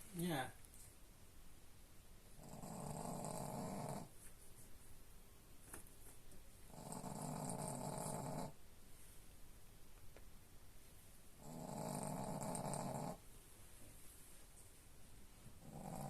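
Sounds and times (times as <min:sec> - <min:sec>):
dog snoring: 0:02.4 - 0:04.1, 0:06.7 - 0:08.6, 0:11.4 - 0:13.2, 0:15.6 - 0:16.0.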